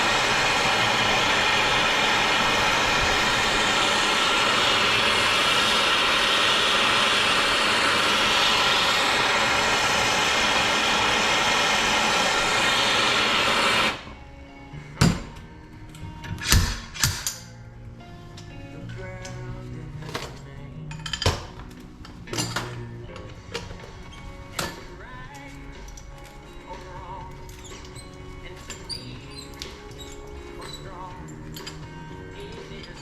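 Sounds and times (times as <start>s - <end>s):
loud rushing noise: 0.0s - 14.1s.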